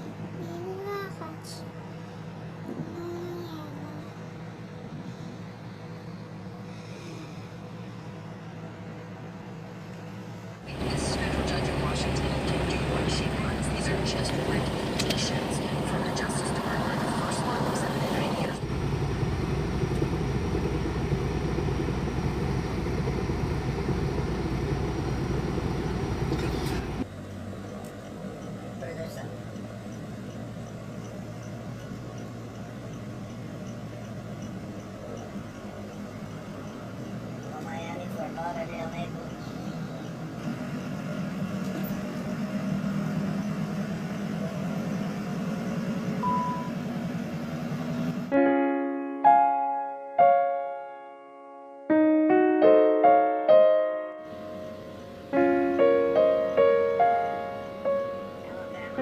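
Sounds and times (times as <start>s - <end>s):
vehicle road and engine rumble: 0.0s - 48.3s, 54.3s - 59.0s
low rumble: 10.7s - 27.1s
piano music: 46.2s - 46.8s, 48.3s - 59.0s.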